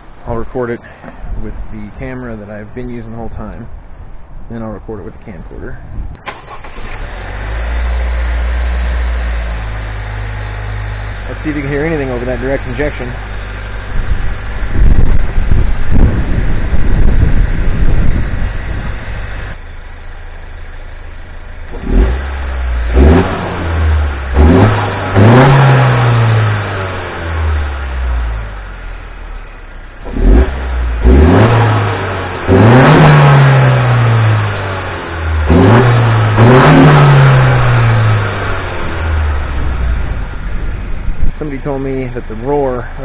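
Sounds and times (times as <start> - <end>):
car engine revving in blips: 21.4 - 43.0.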